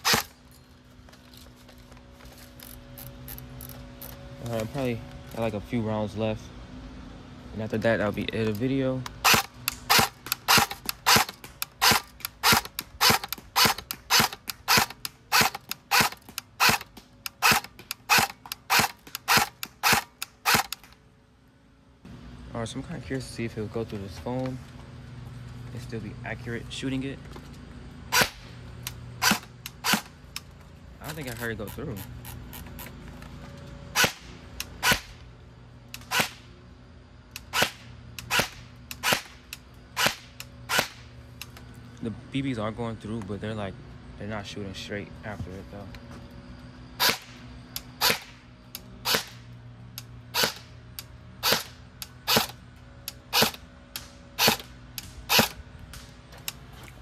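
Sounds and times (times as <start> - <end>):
airsoft rifle firing shots: 0.0 - 0.3, 9.2 - 20.9, 28.1 - 28.5, 29.2 - 30.1, 36.0 - 36.5, 37.5 - 39.4, 40.0 - 41.1, 47.0 - 47.4, 48.0 - 48.4, 49.0 - 49.4, 50.3 - 50.7, 51.4 - 52.6.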